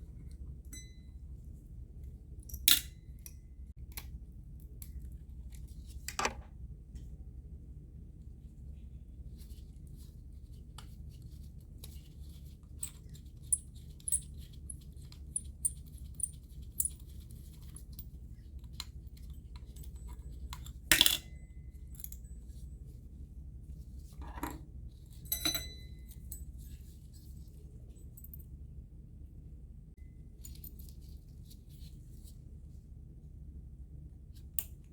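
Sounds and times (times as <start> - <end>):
metallic clink: 25.2 - 26.7.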